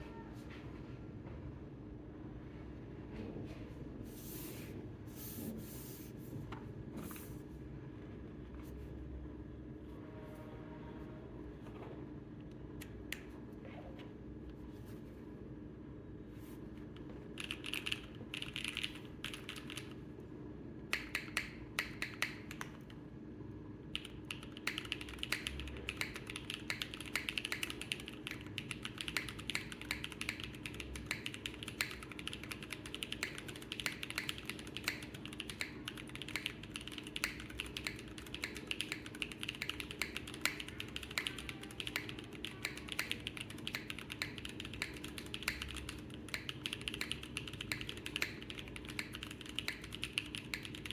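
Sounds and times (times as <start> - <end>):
mechanical keyboard typing: 17.3 - 20.0, 24.0 - 50.9.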